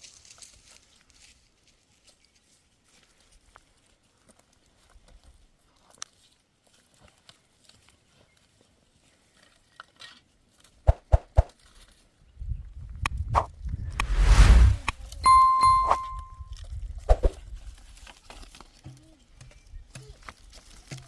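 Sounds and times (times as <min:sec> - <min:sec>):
faint clicks and rustles: 0:00.0 - 0:10.8, 0:16.6 - 0:21.0.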